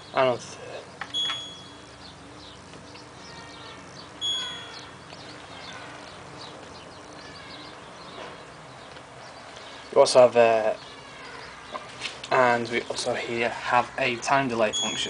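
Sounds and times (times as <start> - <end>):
faint bird chirps: 0.0 - 13.1, 14.6 - 15.0
washing machine panel beeping: 1.1 - 1.8, 4.2 - 4.8, 14.7 - 15.0.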